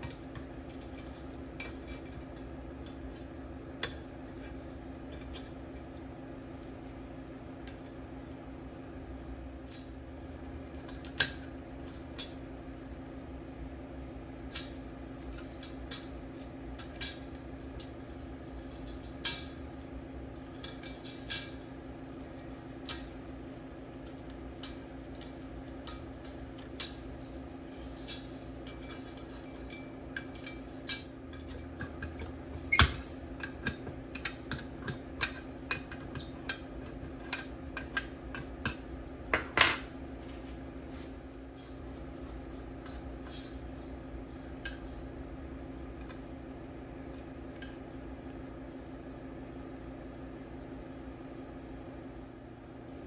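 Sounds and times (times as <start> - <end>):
steady low hum: 0.0 - 53.0.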